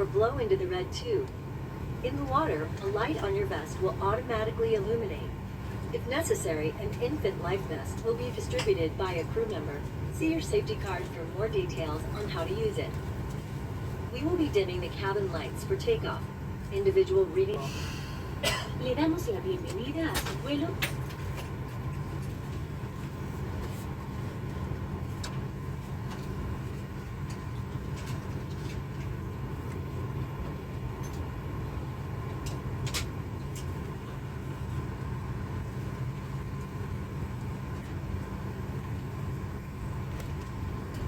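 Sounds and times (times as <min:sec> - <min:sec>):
constant faint tone: 0:00.0 - 0:17.7
airplane cabin drone: 0:00.0 - 0:41.0.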